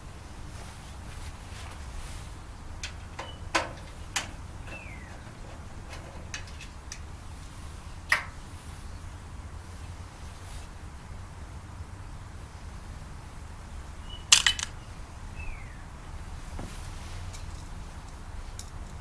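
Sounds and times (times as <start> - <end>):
tools and parts clicking: 2.8 - 7.0, 14.3 - 14.8.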